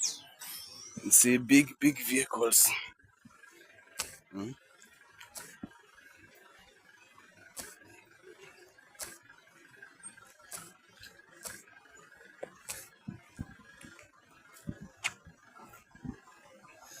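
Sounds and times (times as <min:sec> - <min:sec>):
faint steady background tone: 0:00.0 - 0:17.0
footsteps walking: 0:14.6 - 0:15.3.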